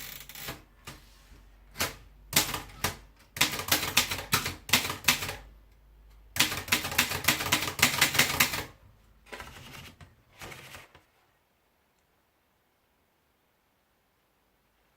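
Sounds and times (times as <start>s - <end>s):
manual typewriter typing: 1.7s - 5.5s, 6.3s - 11.0s.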